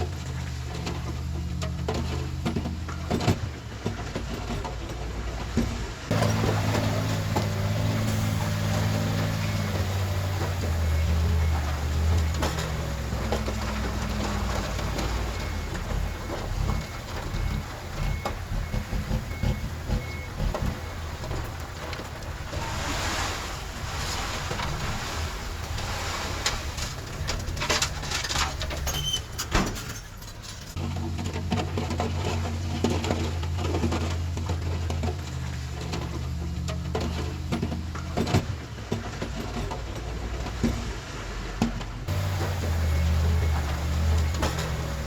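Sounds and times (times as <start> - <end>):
metallic rattling and clanking: 0.0 - 22.6, 25.7 - 40.1, 42.1 - 45.0
bulldozer engine under load: 0.0 - 45.0.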